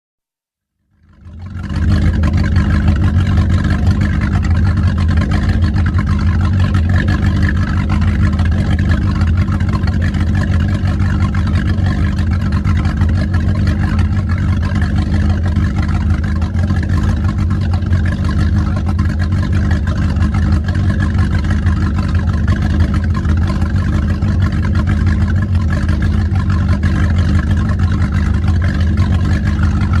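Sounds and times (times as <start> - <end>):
car engine running steadily: 0.8 - 30.0.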